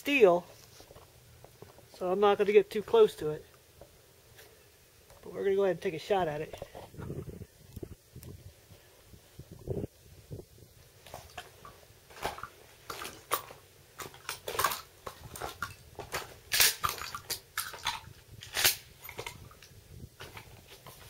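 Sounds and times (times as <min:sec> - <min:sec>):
handling clicks and rustles: 0:10.9 - 0:21.0.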